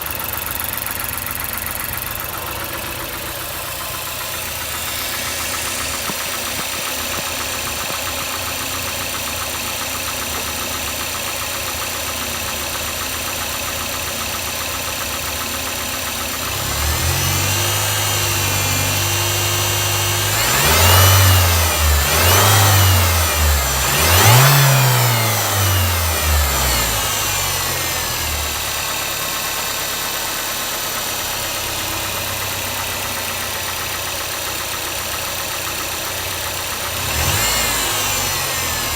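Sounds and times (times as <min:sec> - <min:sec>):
engine knocking tap: 0:00.0 - 0:16.6, 0:30.9 - 0:37.0
car engine idling and revving: 0:00.0 - 0:38.9.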